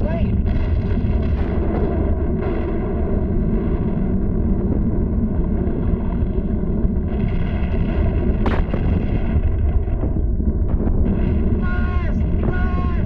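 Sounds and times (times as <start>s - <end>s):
sharp crack: 7.1s - 12.7s.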